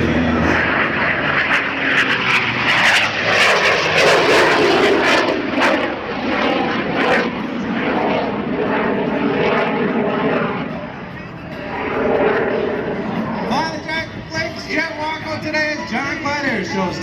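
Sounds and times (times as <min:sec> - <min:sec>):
biplane engines in flight: 0:00.0 - 0:17.0.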